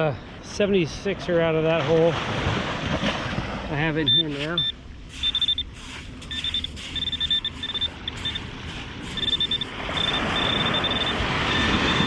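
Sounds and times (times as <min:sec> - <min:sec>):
metal detector beeps: 0:04.0 - 0:12.0.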